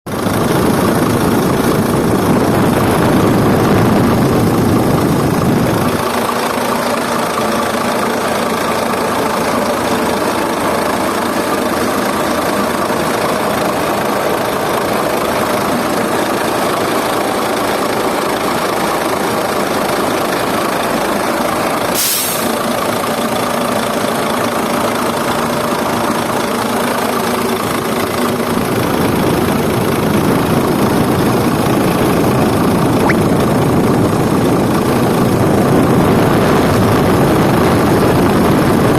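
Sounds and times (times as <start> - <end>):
cooling fan bearing growling: 0.1 - 21.9
truck engine idling: 0.1 - 38.8
short sharp noise: 33.0 - 33.5.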